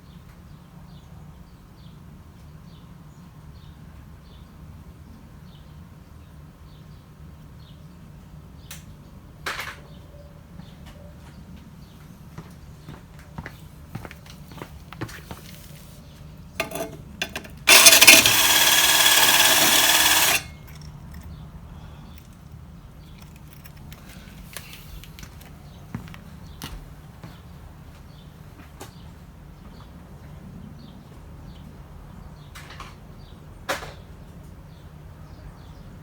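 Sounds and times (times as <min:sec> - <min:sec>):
stone grinding metal blade: 0:16.6 - 0:20.6
power drill motor whine: 0:16.6 - 0:20.7.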